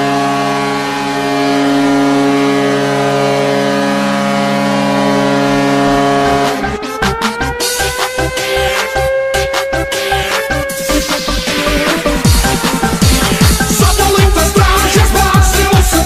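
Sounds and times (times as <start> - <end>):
goal horn blast: 0.0 - 6.9
electronic music with kick drum: 5.2 - 16.0.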